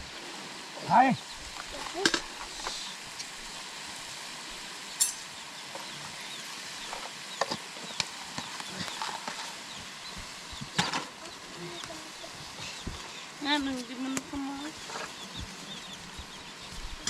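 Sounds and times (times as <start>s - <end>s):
food sizzling in frying: 0.0s - 17.0s.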